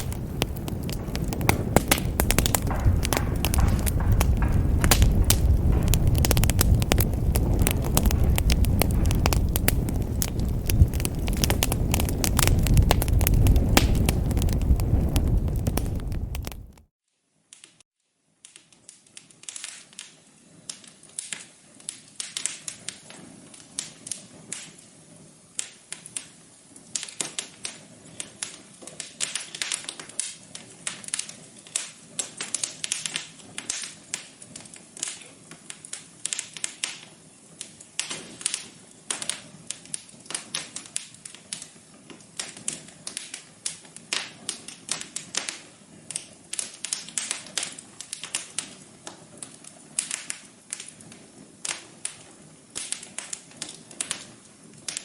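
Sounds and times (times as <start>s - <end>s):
wood fire crackling: 0.0s - 16.9s, 18.5s - 55.0s.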